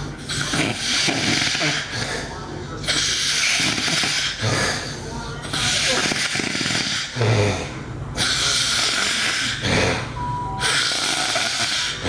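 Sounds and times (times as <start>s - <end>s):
girl snoring: 8.5s - 12.0s.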